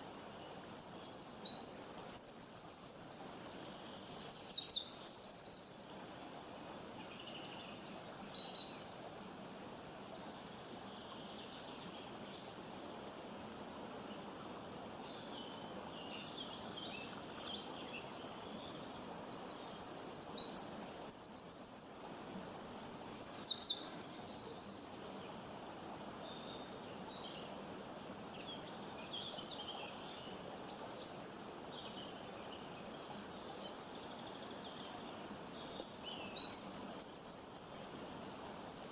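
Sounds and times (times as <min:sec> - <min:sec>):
small birds chirping: 0:00.0 - 0:05.9, 0:18.7 - 0:25.0, 0:34.7 - 0:38.9
background hiss: 0:00.0 - 0:38.9.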